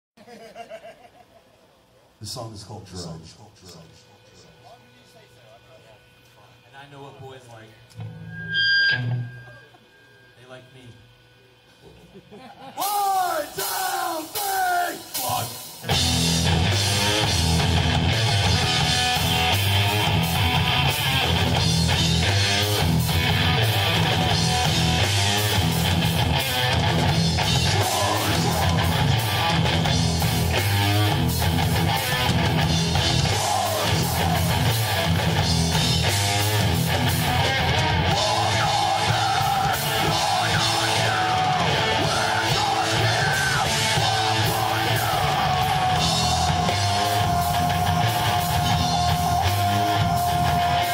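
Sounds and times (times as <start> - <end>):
electric guitar: 7.8 - 10.3, 13.5 - 50.9
drum kit: 12.8 - 50.9.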